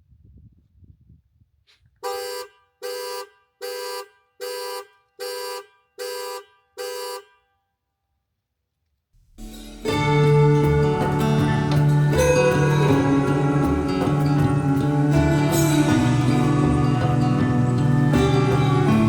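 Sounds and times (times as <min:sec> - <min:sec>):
car horn beeps: 0:02.0 - 0:07.6.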